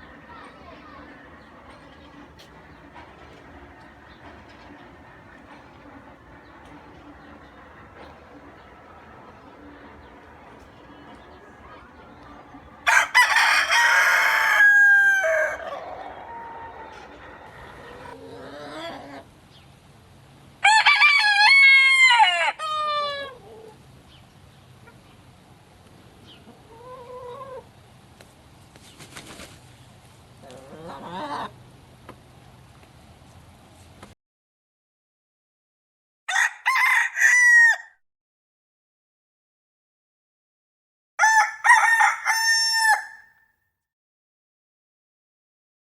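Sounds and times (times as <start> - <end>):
roosters crowing: 0.0 - 19.3, 20.6 - 23.8, 36.3 - 38.0, 41.2 - 43.3.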